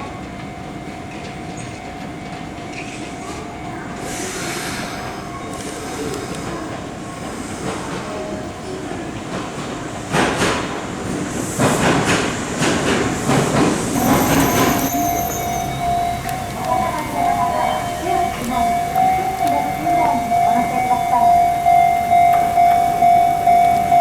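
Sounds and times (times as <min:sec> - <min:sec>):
electric train rumbling: 0:00.0 - 0:24.0
high wheel squeal: 0:13.3 - 0:24.0.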